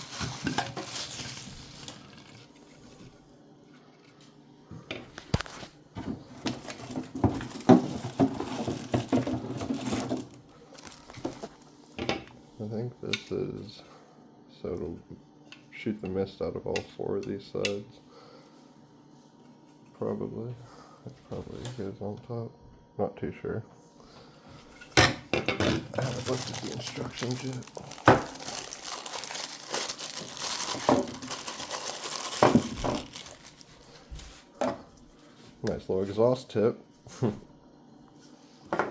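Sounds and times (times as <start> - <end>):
plastic parts clattering: 0.0 - 2.5, 6.4 - 12.2, 25.6 - 33.7
packaging crinkling and rustling: 0.0 - 3.0, 6.3 - 12.0, 25.8 - 34.5.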